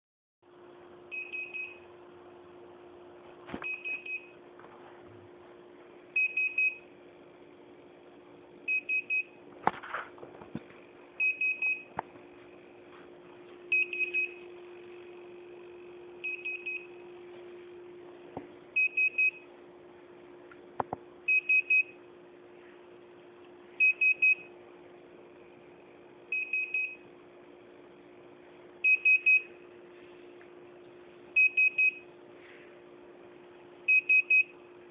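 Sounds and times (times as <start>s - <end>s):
steady low hum: 0.5s - 34.9s
transmitter high beeps: 13.7s - 14.4s.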